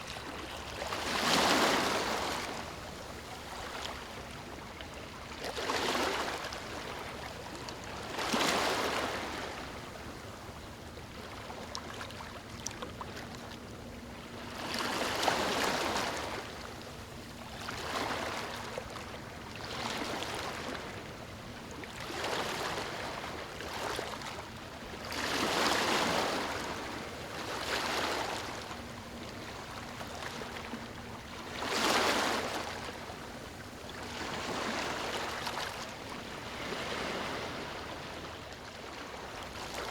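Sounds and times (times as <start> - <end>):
gentle waves lapping on beach: 0.0 - 39.9.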